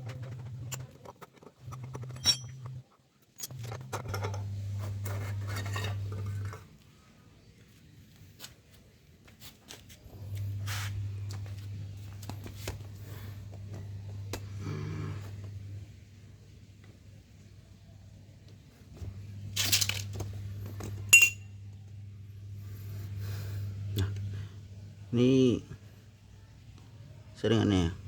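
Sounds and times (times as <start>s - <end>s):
low steady hum: 0.0s - 9.2s, 9.9s - 28.0s
metal clinks and scrapes of tools: 0.3s - 6.7s, 21.1s - 21.5s.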